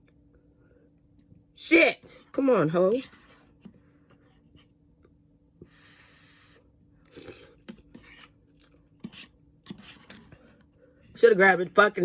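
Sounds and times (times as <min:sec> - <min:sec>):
fork scraping container: 0:09.0 - 0:10.6.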